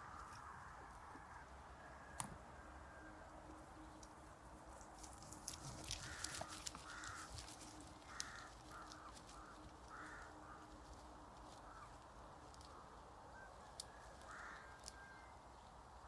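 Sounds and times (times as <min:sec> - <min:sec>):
crow cawing: 0:05.8 - 0:12.0, 0:12.6 - 0:15.3.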